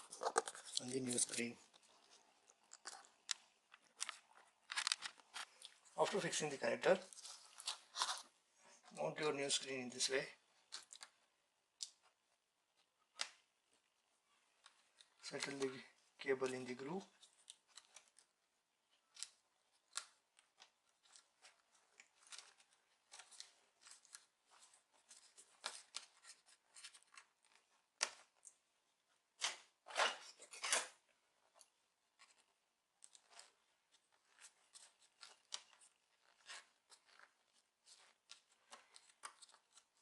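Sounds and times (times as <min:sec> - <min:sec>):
rustling: 0:00.0 - 0:11.2, 0:11.9 - 0:40.0.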